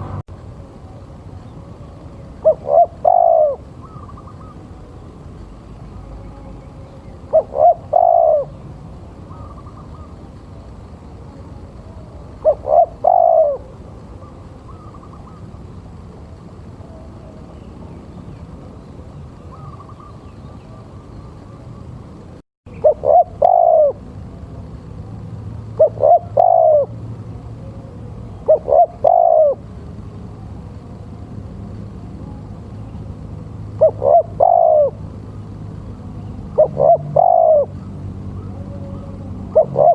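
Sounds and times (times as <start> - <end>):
steady background hiss: 0.0 - 39.9
dove cooing: 1.4 - 5.2, 5.9 - 10.7, 11.3 - 17.6, 19.1 - 21.7, 22.7 - 24.4, 25.7 - 30.5, 33.7 - 39.9.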